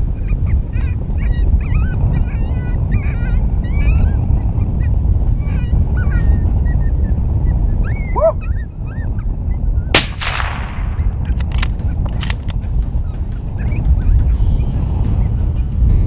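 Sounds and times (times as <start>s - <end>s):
wind rumbling on microphone: 0.0s - 16.0s
rifle shot with echo: 10.0s - 12.4s
sharp clicks: 10.0s - 12.6s.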